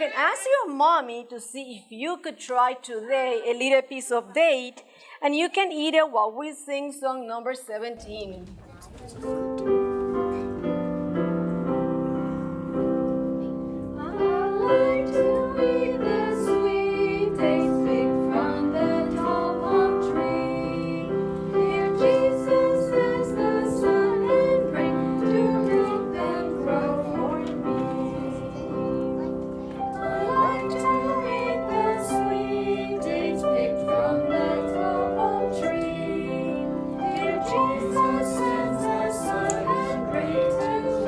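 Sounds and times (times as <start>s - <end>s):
keyboard accompaniment: 9.1s - 41.0s.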